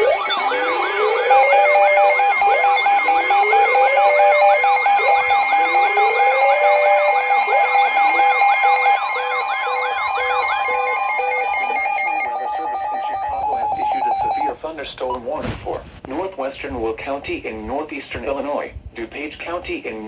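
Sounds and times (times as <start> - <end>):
steady electronic tone: 0.0 - 14.5
siren fast yelp: 0.0 - 14.6
siren rising wails: 0.0 - 14.6
two-pitch hi-lo siren beep: 0.0 - 14.6.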